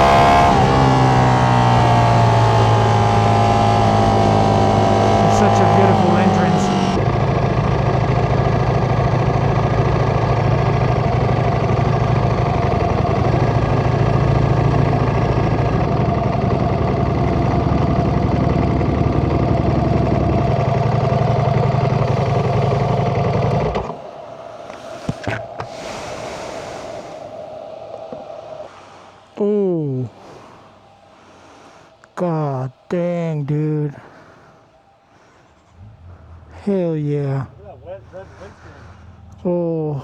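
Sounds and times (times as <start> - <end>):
motorcycle engine idling: 0.0 - 25.6.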